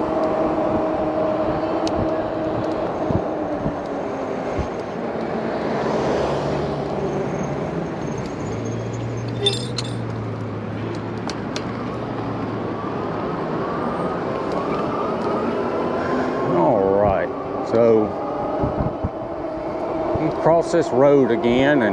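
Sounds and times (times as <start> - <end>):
road and wind noise: 0.0 - 21.9
car passing by: 4.3 - 9.3
clinking rattle: 9.3 - 10.1.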